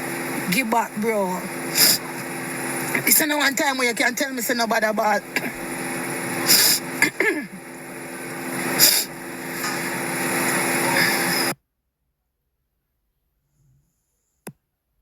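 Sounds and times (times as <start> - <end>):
short hissing bursts: 0.0 - 4.3, 5.2 - 11.6.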